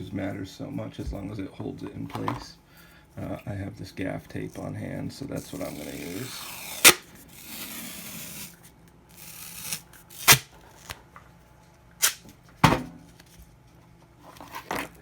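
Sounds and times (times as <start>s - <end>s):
tape ripping off roll: 5.5s - 8.6s, 9.2s - 11.0s, 12.0s - 12.2s.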